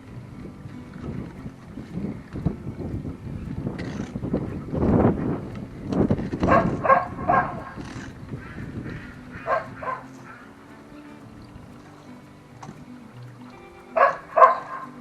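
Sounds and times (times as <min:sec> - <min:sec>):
music: 0:00.0 - 0:15.0
wind rumble on microphone: 0:00.0 - 0:15.0
dog barking: 0:06.5 - 0:07.8, 0:09.4 - 0:10.4, 0:14.0 - 0:14.9.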